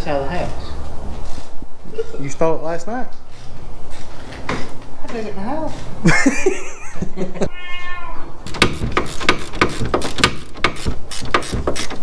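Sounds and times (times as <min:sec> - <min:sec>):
sharp clicks and knocks: 0:08.4 - 0:12.0.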